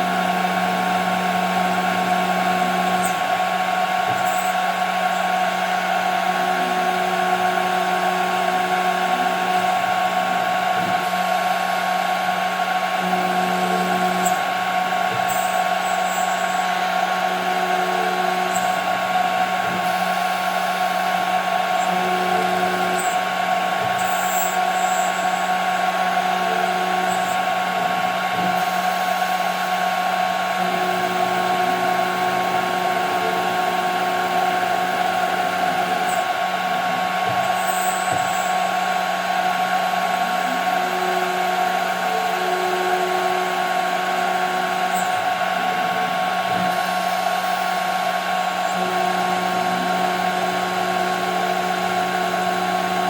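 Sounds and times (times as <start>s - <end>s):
low machine hum: 0.0s - 53.0s
router spindle whining: 0.0s - 53.0s.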